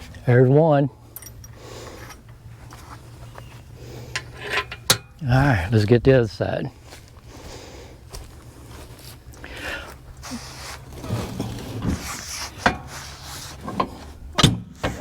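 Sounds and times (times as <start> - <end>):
sharp metal knocks and clicks: 4.2 - 5.2.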